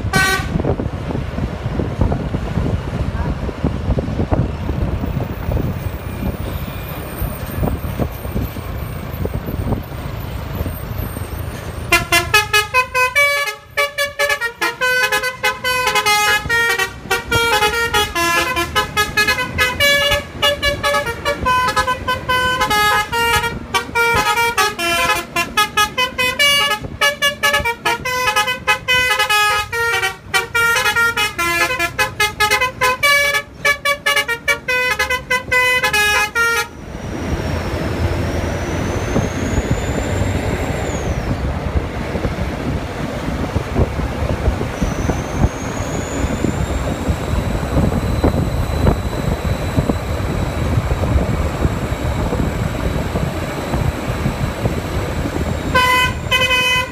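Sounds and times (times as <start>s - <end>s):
multi-tone bus horn melody: 0.0s - 0.8s, 11.8s - 36.8s, 55.0s - 56.9s.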